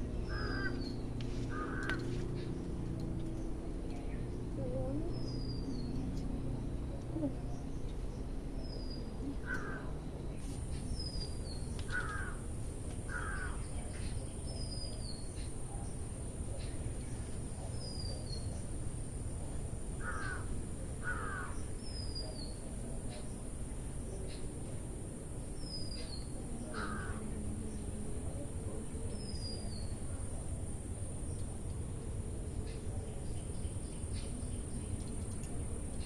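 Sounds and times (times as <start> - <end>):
steady low rumble: 0.0 - 22.0
birds harsh calls: 0.2 - 12.5, 13.1 - 15.5, 20.0 - 22.5, 25.9 - 27.3.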